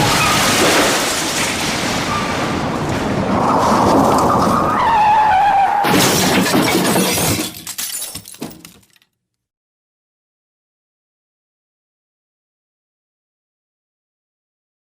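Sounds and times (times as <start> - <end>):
car crash impact: 0.0 - 4.8, 5.8 - 8.9
debris clattering: 0.0 - 4.8, 5.8 - 9.1
tyres skidding with a screech: 0.0 - 6.2
glass shattering: 5.8 - 9.0.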